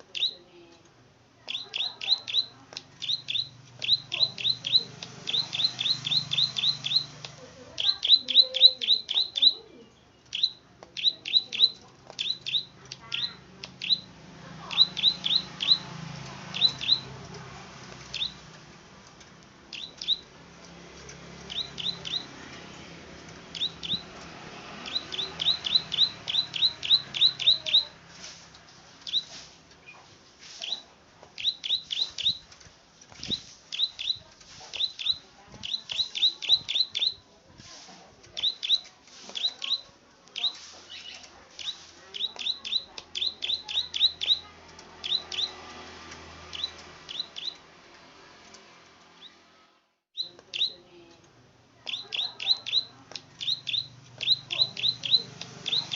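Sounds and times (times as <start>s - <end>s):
songbird clicking calls: 0.0s - 0.4s, 1.4s - 17.3s, 17.9s - 20.4s, 21.1s - 22.4s, 23.4s - 28.0s, 29.0s - 37.2s, 38.3s - 47.7s, 50.2s - 55.9s.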